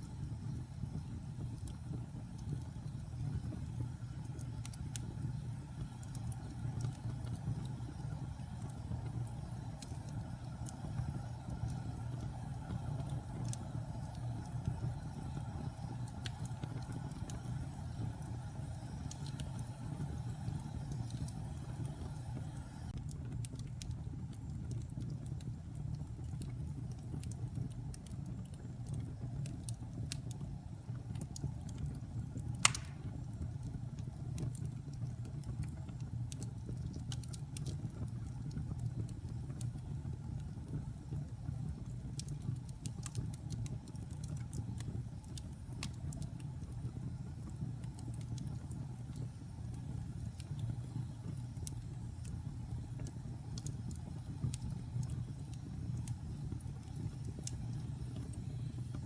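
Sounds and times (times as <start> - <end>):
fire crackling: 0.0 - 59.0
low rumble of flames: 0.0 - 59.0
sharp fire pop: 32.6 - 33.4.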